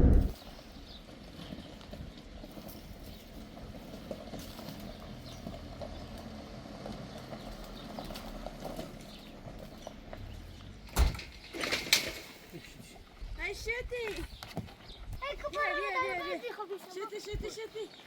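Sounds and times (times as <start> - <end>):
low outdoor rumble: 0.0 - 11.5.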